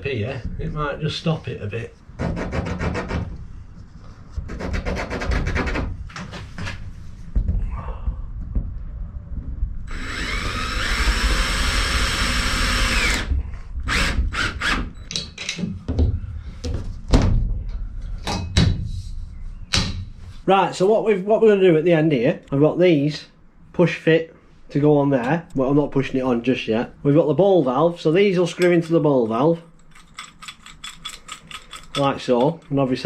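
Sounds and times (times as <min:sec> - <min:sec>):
power drill running: 0:09.9 - 0:13.3, 0:13.9 - 0:14.9
handling knocks and clicks: 0:29.7 - 0:32.8.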